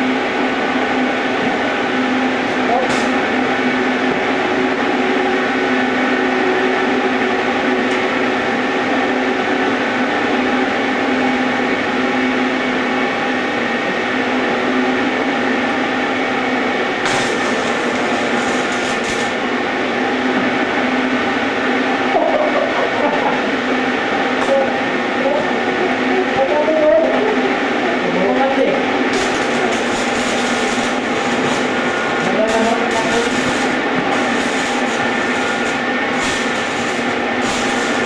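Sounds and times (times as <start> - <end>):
metalworking machine humming: 0.0 - 10.8, 14.5 - 26.4, 28.6 - 38.0
harsh hissing: 1.5 - 4.0, 17.1 - 19.7, 29.1 - 38.0.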